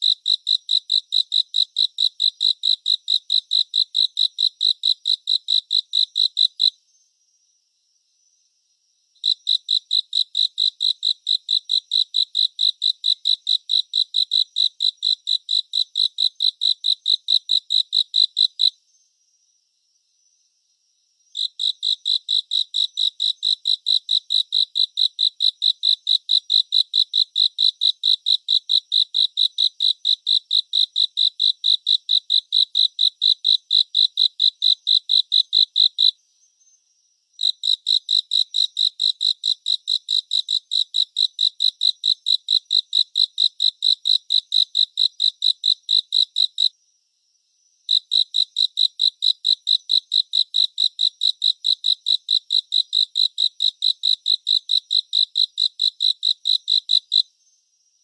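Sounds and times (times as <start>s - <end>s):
cricket chirping: 0.0s - 58.0s
faint high insect trill: 0.0s - 58.0s.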